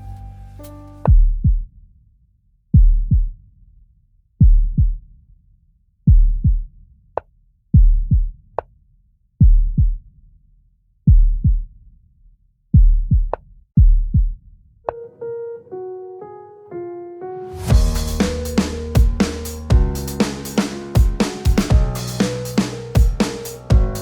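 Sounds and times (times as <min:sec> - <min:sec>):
deep double thump: 0:17.7 - 0:20.0, 0:21.0 - 0:22.0, 0:23.0 - 0:24.0.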